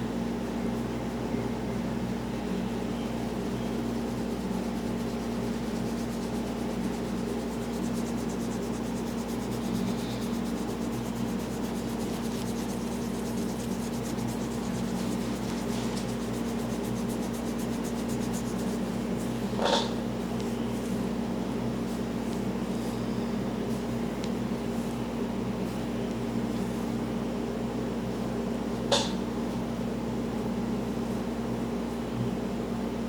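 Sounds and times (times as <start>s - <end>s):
steady electric hum: 0.0s - 33.0s
hands rubbing skin and hair: 3.3s - 19.5s.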